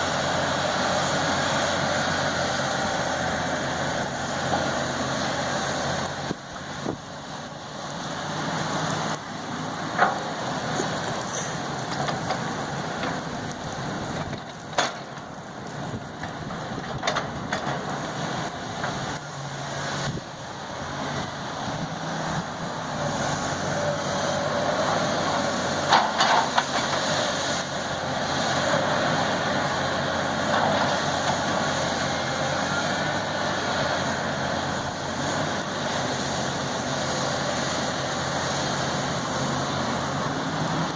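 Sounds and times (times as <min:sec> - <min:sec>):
backhoe engine running: 0:00.0 - 0:40.9.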